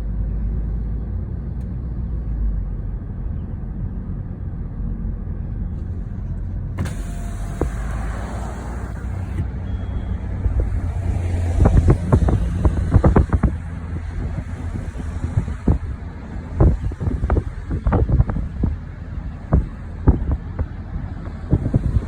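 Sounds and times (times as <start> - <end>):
car road and engine rumble: 0.0 - 22.0
sharp knocks and thumps: 19.5 - 22.0.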